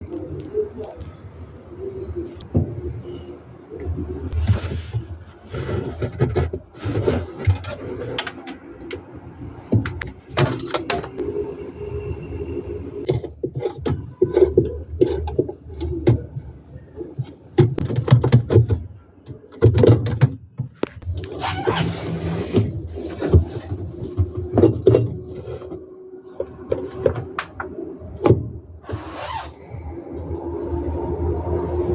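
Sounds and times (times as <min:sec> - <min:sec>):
knocking and scraping in washing machine: 0:04.3 - 0:09.0, 0:13.0 - 0:28.5.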